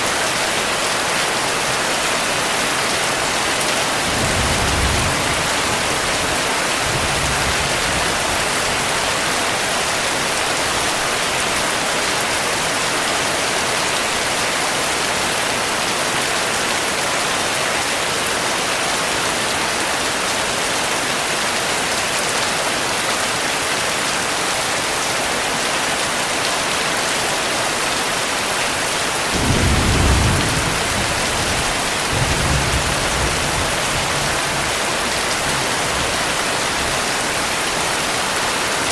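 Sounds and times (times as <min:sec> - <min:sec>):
heavy rain pouring: 0:00.0 - 0:38.9
thunder rumbling: 0:29.3 - 0:34.7.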